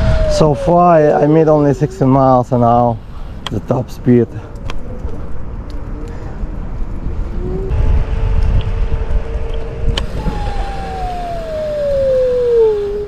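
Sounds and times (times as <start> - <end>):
electric scooter motor whining: 0.0 - 2.3, 8.7 - 13.0
wind rumble on microphone: 0.0 - 13.0.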